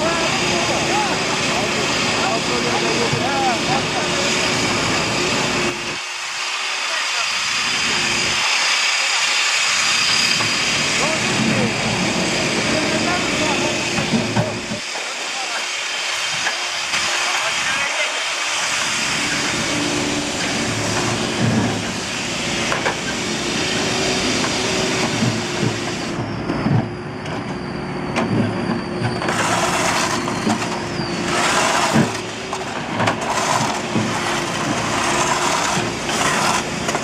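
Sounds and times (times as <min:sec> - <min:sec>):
diesel engine hum: 0:00.0 - 0:06.4, 0:15.8 - 0:37.0
machinery knocks and clanks: 0:24.4 - 0:27.6.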